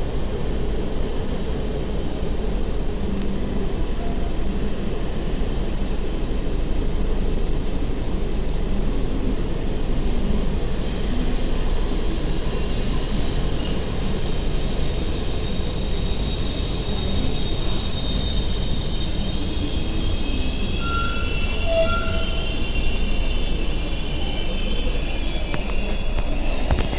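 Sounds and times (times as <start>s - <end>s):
train rumbling: 0.0s - 26.9s
wheel squeal: 12.5s - 26.9s.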